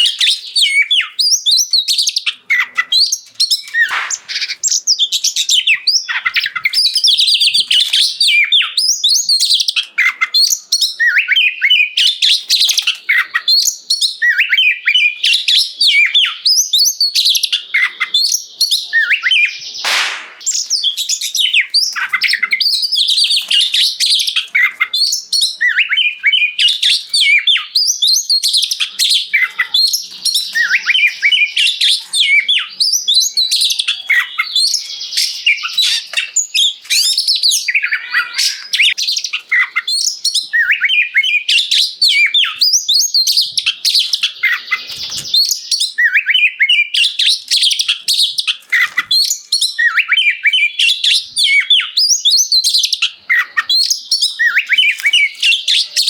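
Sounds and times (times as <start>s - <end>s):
bird singing whistled notes: 0.0s - 56.0s
short harsh bird rasp: 3.6s - 4.8s.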